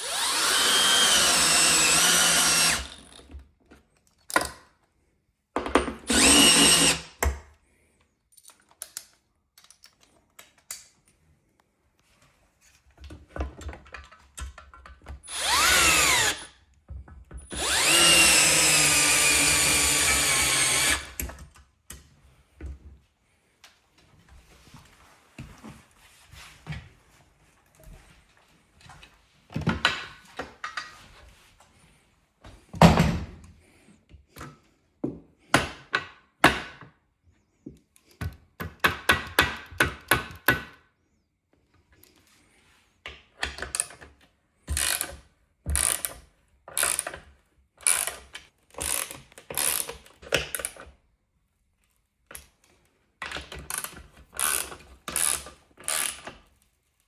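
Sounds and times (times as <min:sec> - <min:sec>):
hand ratchet clicking: 0:45.8 - 0:46.1, 0:46.7 - 0:47.2, 0:47.8 - 0:50.8, 0:53.7 - 0:56.3.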